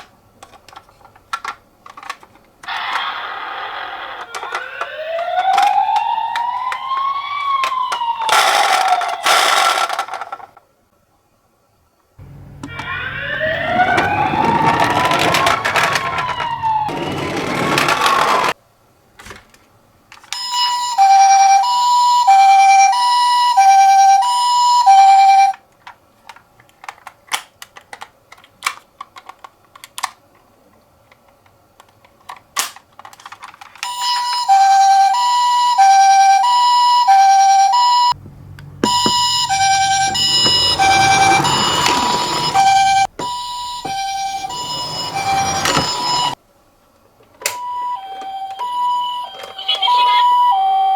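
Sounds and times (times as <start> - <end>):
toy wheels rolling: 0.0 - 10.6, 12.2 - 18.6, 31.1 - 35.2, 36.1 - 46.4
toy electronic siren: 2.6 - 10.2, 12.2 - 18.6, 20.4 - 25.6, 33.8 - 38.2, 38.8 - 46.4, 47.5 - 50.9
clicks: 4.2 - 10.4, 12.2 - 18.6.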